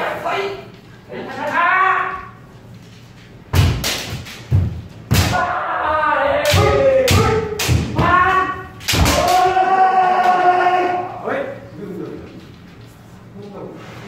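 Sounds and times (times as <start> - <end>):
bamboo sword strikes: 3.5 - 5.5, 6.4 - 8.2, 8.8 - 9.5
long drawn-out shouts: 5.3 - 11.2.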